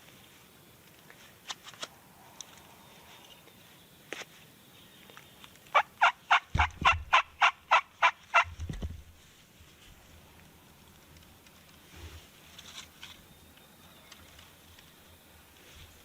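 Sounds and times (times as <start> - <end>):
turkey yelping: 5.7 - 8.6.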